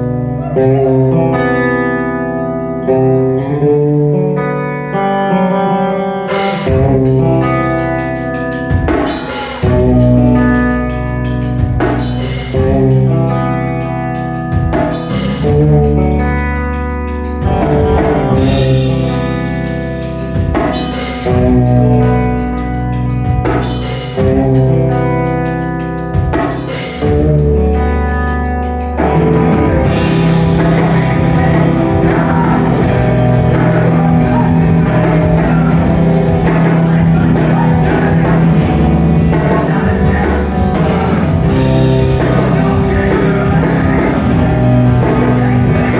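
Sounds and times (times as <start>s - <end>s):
electric guitar chords ringing: 0.0s - 45.9s
full band with fast drumming: 6.3s - 45.9s.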